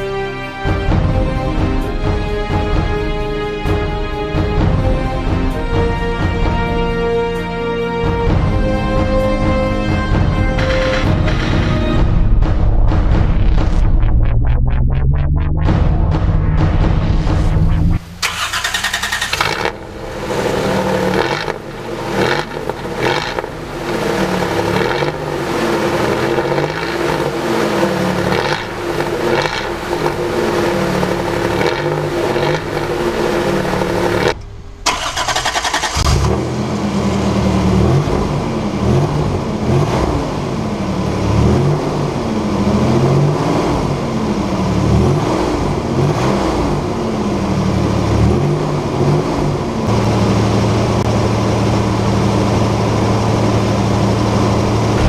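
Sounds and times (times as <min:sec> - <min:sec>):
pickup engine revving: 0:10.0 - 0:12.0, 0:15.6 - 0:55.0.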